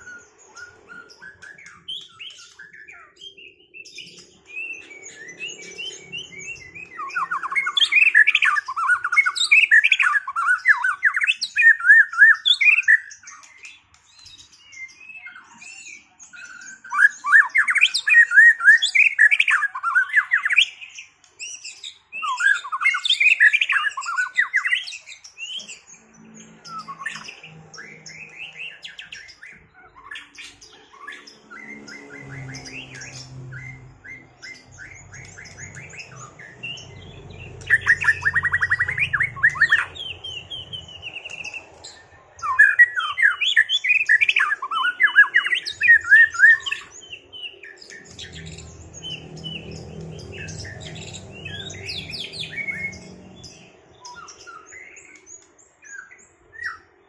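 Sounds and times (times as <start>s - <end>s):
bird singing varied song: 0.0s - 57.0s.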